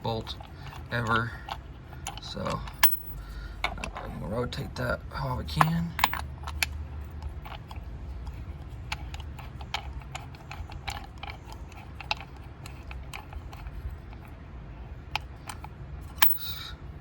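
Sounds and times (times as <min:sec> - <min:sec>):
steady low hum: 0:00.0 - 0:17.0
wrench clicking on bolt: 0:05.6 - 0:06.8.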